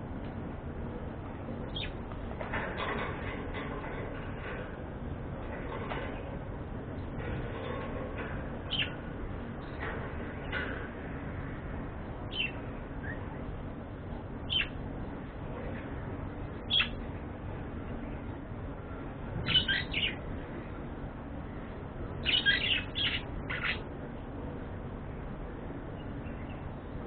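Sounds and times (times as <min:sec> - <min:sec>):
low background noise: 0:00.0 - 0:27.0.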